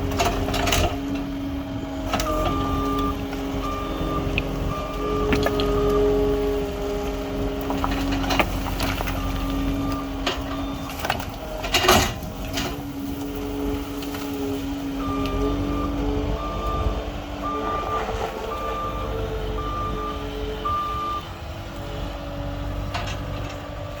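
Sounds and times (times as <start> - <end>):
skid steer loader running: 0.0 - 24.0
backup alarm beeps: 2.4 - 6.0, 9.1 - 11.1, 15.0 - 21.2.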